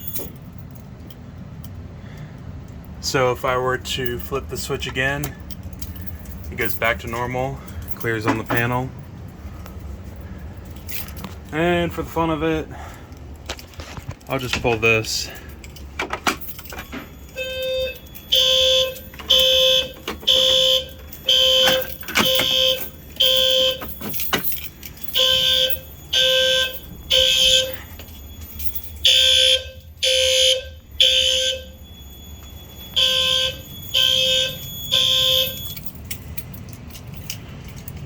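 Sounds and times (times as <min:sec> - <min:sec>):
fire alarm horn blasts: 0:16.5 - 0:36.0.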